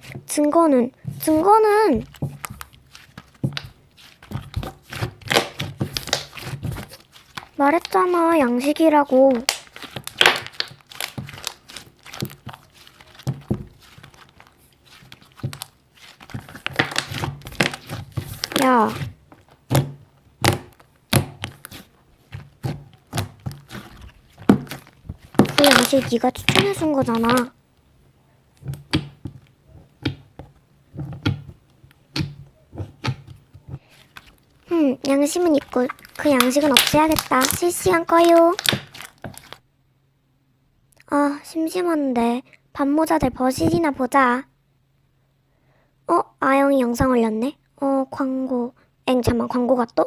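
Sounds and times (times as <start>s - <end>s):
crinkling and rustling handling: 0.0s - 27.9s, 28.5s - 39.6s.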